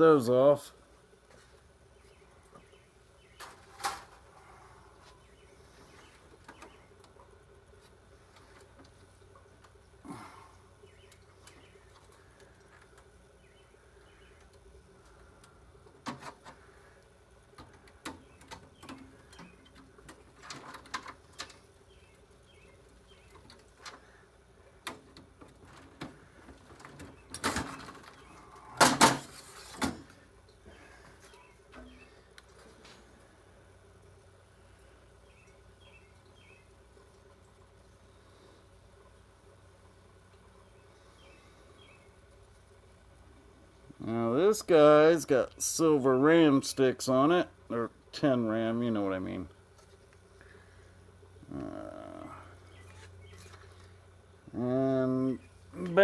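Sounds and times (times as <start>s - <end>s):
faint bird chirps: 30.7s - 32.3s.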